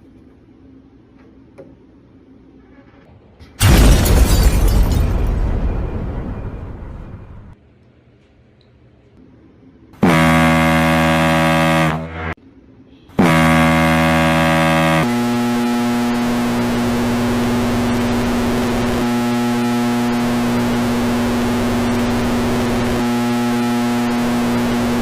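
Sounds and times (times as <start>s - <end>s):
distorted air horn blasts: 10.0s - 25.0s
held drone: 13.2s - 25.0s.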